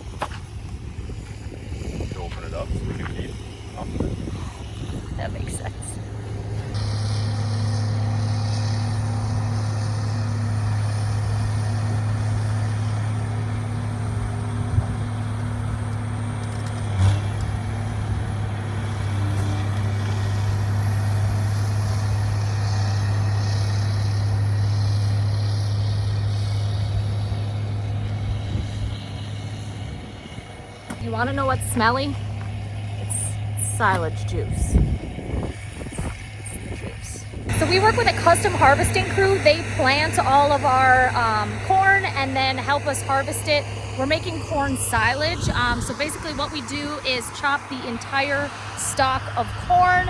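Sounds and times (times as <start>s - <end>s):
farm machinery engine droning: 0.0s - 50.0s.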